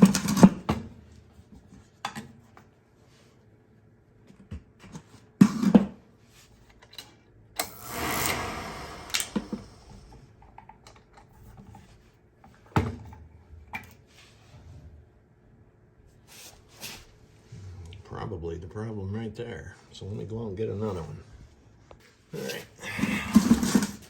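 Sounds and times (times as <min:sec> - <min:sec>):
noisy rasp: 0:07.7 - 0:10.0.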